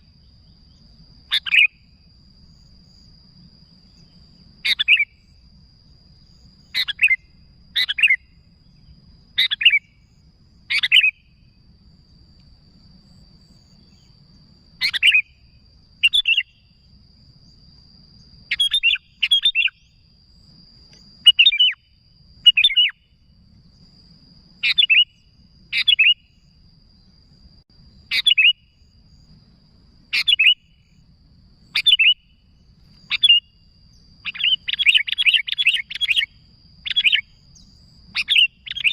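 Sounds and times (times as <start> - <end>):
bulbul calls: 1.3 - 1.8, 4.6 - 5.2, 6.7 - 8.3, 9.4 - 9.9, 10.7 - 11.3, 14.8 - 15.4, 16.0 - 16.6, 18.5 - 19.9, 21.2 - 23.0, 24.6 - 26.3, 28.1 - 28.6, 30.1 - 30.7, 31.7 - 32.2, 33.0 - 33.5, 34.2 - 38.9.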